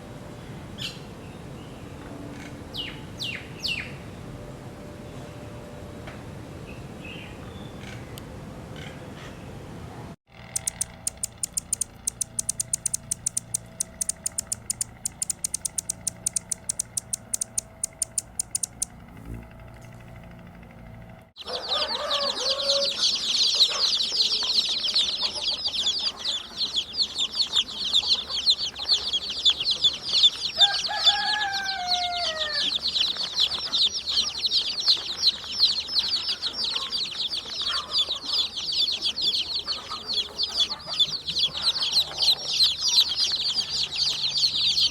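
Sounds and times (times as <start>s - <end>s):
chorus of small birds chirping: 10.5s - 20.0s, 21.4s - 44.9s
high sharp bird chirps: 10.6s - 18.9s.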